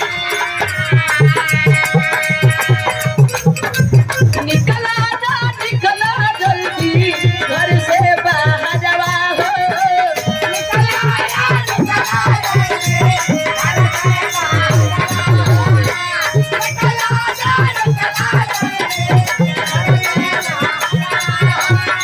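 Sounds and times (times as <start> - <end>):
hand drum beat: 0.0 - 22.0
wavering melody: 10.2 - 17.7.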